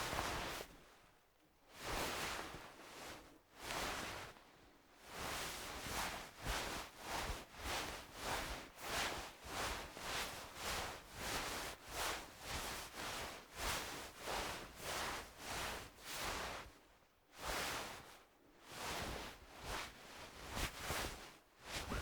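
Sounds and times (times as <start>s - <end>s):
clothing fabric rustling: 19.0s - 22.0s.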